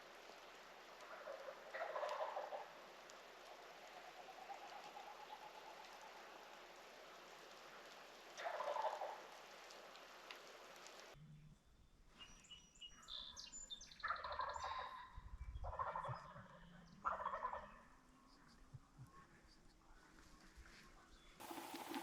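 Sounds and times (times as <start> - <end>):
turkeys gobbling: 0.7 - 6.8, 7.5 - 9.5, 14.0 - 15.1, 15.7 - 17.8, 21.4 - 22.0
small birds chirping: 21.0 - 22.0
steady hiss: 21.4 - 22.0.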